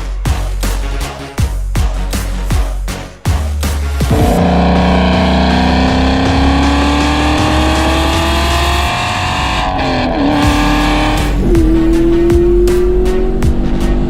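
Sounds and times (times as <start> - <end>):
car engine accelerating hard: 4.0 - 14.0.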